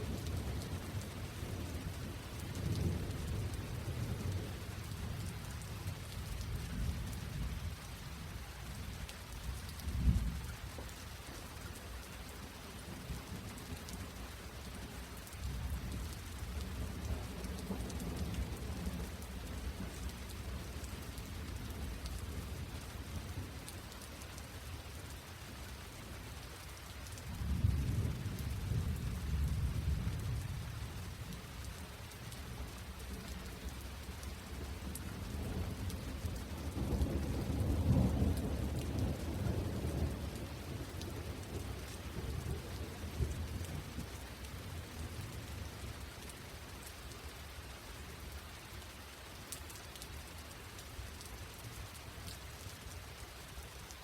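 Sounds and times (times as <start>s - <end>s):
low rumbles of thunder: 0.0s - 11.0s, 12.8s - 23.7s, 27.1s - 46.0s
steady rain falling: 0.0s - 54.0s.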